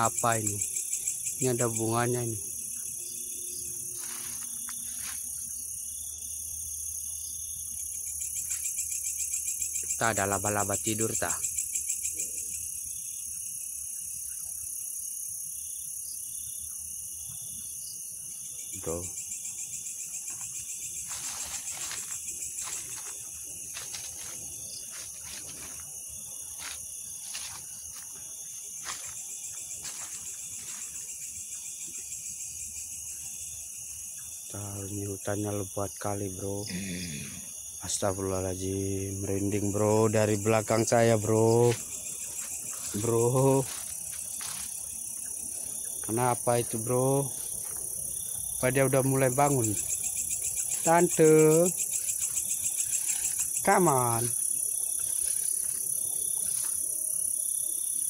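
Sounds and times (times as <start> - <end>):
crickets chirring: 0.0 - 58.0
insects trilling: 0.0 - 58.0.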